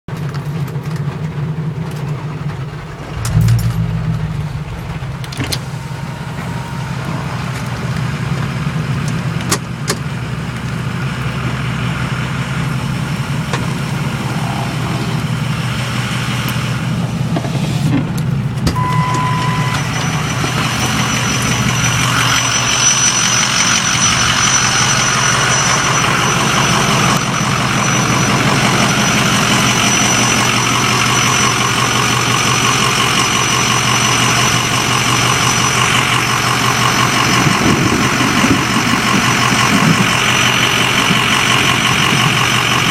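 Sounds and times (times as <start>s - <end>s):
vehicle engine idling: 0.1s - 42.9s
high-pitched squeal: 2.6s - 9.1s, 13.7s - 17.0s, 18.8s - 31.8s
low thump: 2.8s - 7.4s.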